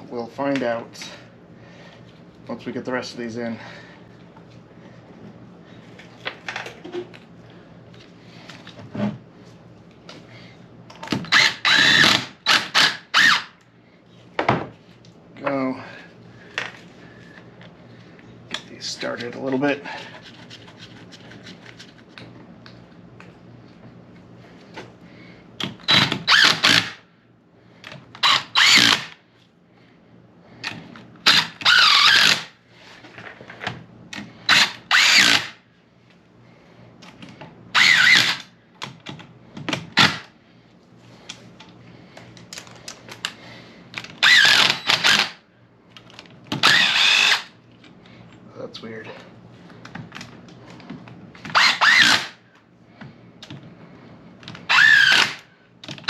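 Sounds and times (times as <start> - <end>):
cordless drill bursts: 11.3 - 13.5, 25.8 - 27.0, 28.2 - 29.2, 31.2 - 32.5, 34.5 - 35.6, 37.7 - 38.5, 44.2 - 45.4, 46.6 - 47.5, 51.5 - 52.4, 54.7 - 55.4.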